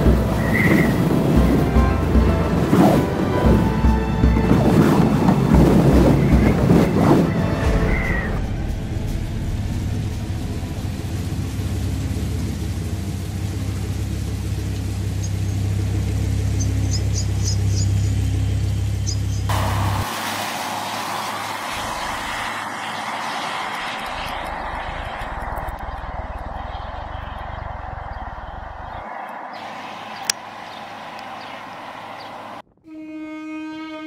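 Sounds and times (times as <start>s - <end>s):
car engine and tyres rumbling: 0.0s - 32.8s
high hiss: 7.3s - 16.0s, 19.5s - 32.6s.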